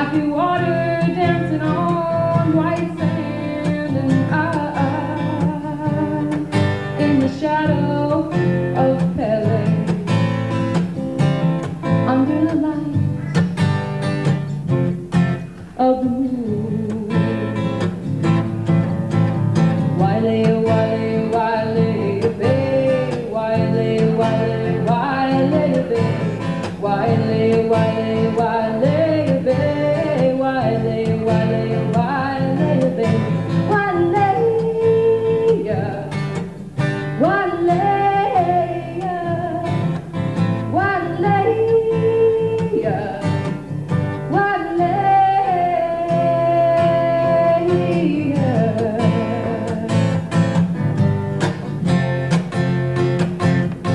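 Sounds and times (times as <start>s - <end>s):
strummed acoustic guitar: 0.0s - 53.9s
woman singing folk song: 0.0s - 53.9s.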